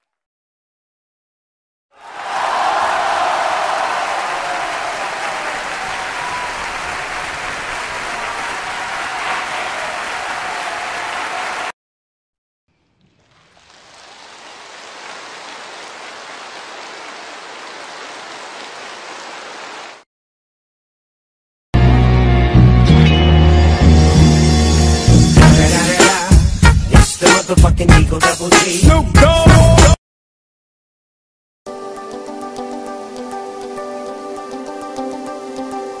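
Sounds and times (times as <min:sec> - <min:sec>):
crowd applause: 0:02.0 - 0:11.7.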